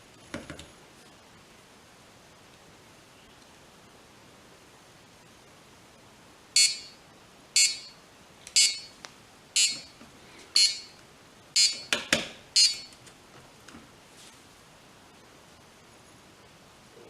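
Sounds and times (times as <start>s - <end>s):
buzzer beeping: 6.6s - 7.0s, 7.6s - 9.0s, 9.6s - 10.0s, 10.6s - 11.0s, 11.6s - 12.0s, 12.6s - 13.0s.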